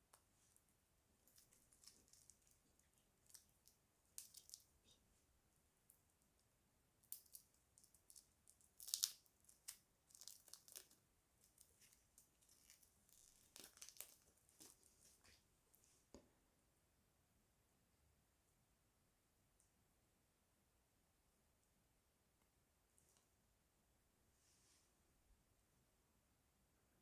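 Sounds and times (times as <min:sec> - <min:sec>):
packaging crinkling and rustling: 0:07.2 - 0:15.4.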